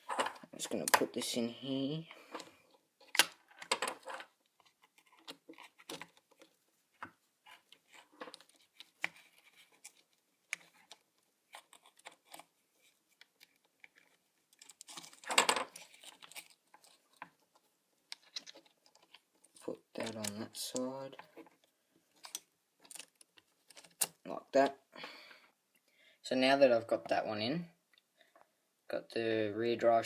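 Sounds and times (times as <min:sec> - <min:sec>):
small parts clicking and knocking: 0:02.2 - 0:24.3.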